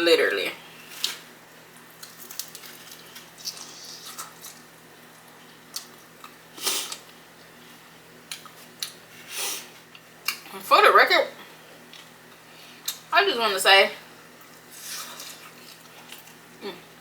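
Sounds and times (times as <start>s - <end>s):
chewing and mouth smacks: 2.0s - 4.6s, 5.2s - 7.5s, 8.3s - 9.0s, 14.4s - 16.4s.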